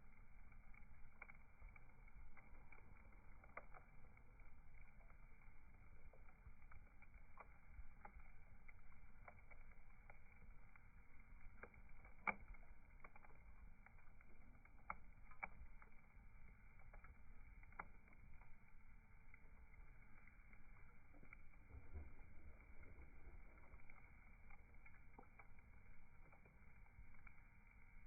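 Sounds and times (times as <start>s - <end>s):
bonfire crackling and popping: 0.0s - 28.0s
low rumble: 19.2s - 25.3s.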